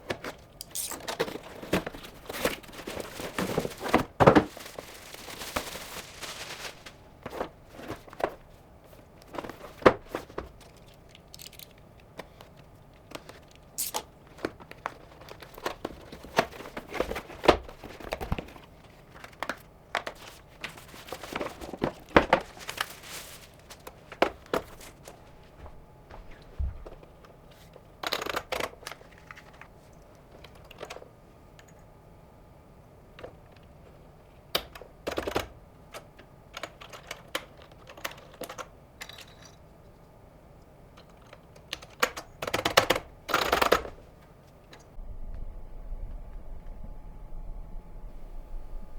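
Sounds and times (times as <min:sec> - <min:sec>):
packaging tearing and crinkling: 0:00.6 - 0:07.1, 0:13.8 - 0:14.0, 0:21.4 - 0:23.9.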